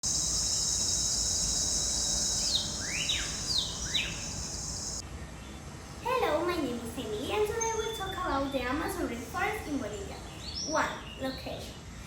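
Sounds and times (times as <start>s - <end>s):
bird whistling: 0.0s - 5.0s
high-pitched insect drone: 0.0s - 5.0s.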